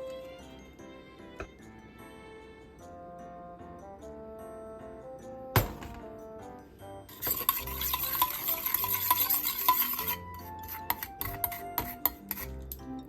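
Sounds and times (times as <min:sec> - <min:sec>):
utensil clicking against a pan: 0:07.1 - 0:12.9.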